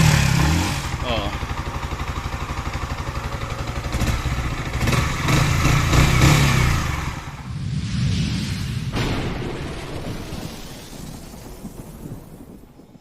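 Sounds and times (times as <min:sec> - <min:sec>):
motorcycle engine revving: 0:00.0 - 0:07.5.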